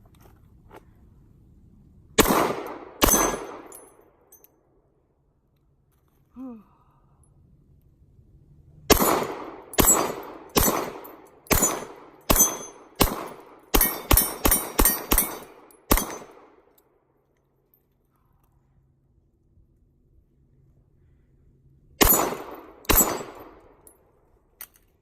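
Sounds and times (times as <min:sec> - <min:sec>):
pistol shots: 0:02.2 - 0:03.8, 0:08.9 - 0:16.6, 0:22.0 - 0:23.6.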